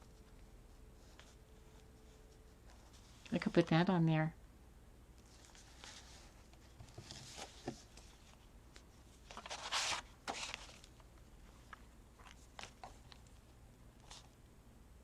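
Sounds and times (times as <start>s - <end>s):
paper rustling: 5.2s - 13.4s, 14.0s - 14.4s.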